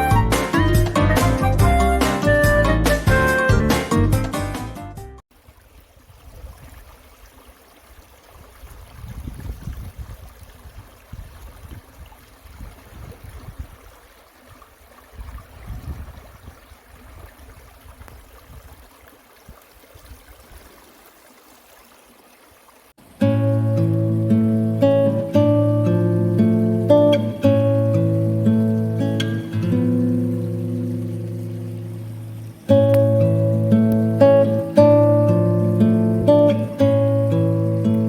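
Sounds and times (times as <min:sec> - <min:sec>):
small stream running: 0:05.2 - 0:38.0.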